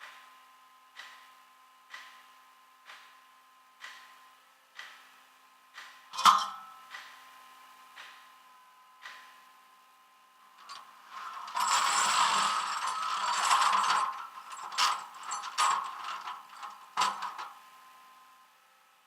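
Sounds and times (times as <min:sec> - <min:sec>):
metal mechanism clicking and rattling: 0:10.6 - 0:17.6.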